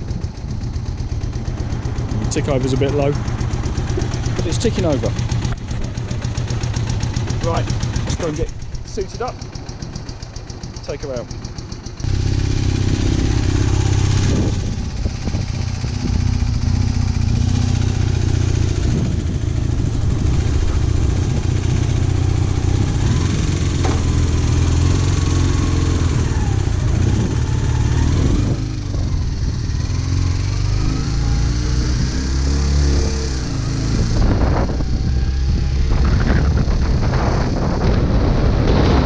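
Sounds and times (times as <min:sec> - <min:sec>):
motorcycle engine running: 0:00.0 - 0:39.0
wind on microphone: 0:12.0 - 0:39.0.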